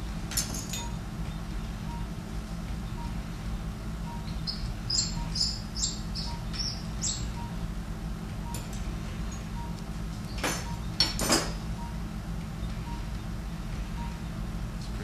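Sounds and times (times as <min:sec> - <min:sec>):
low equipment hum: 0:00.0 - 0:15.0
patient monitor beep: 0:01.9 - 0:02.1, 0:02.9 - 0:03.2, 0:04.0 - 0:04.4, 0:05.1 - 0:05.4, 0:07.2 - 0:07.6, 0:09.5 - 0:09.8, 0:10.6 - 0:11.0, 0:11.8 - 0:12.1, 0:12.8 - 0:13.2, 0:14.0 - 0:14.3.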